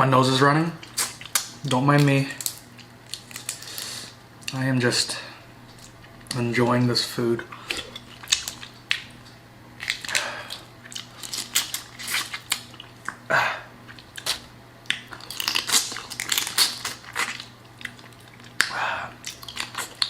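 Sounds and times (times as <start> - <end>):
chewing and wet mouth noises: 0.8 - 3.8, 7.5 - 20.0
shells cracking and snapping: 0.9 - 3.8, 7.6 - 13.2, 13.9 - 20.0.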